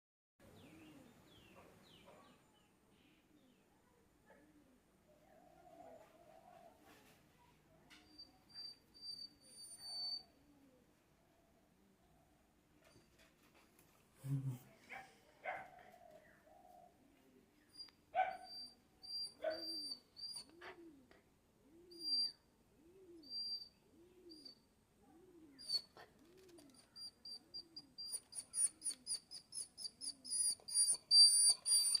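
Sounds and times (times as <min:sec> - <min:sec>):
dog whining: 0:08.0 - 0:10.3, 0:17.8 - 0:21.2, 0:21.9 - 0:22.4, 0:23.2 - 0:23.7, 0:25.4 - 0:32.0
soft low moan: 0:14.2 - 0:14.8.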